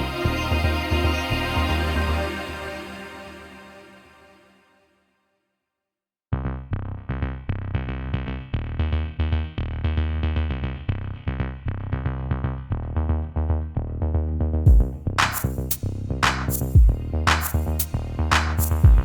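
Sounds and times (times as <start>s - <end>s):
electronic synthesizer music: 0.0s - 4.4s
drum machine beat: 14.7s - 19.0s.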